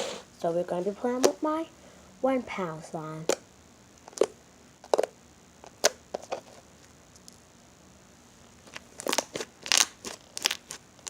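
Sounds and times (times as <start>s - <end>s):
slime popping and crackling: 9.0s - 10.8s.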